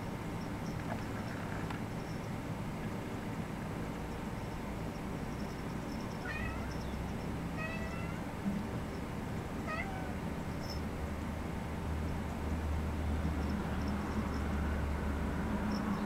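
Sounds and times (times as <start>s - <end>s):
cat meowing: 6.2s - 6.8s, 7.6s - 8.2s, 9.6s - 10.2s.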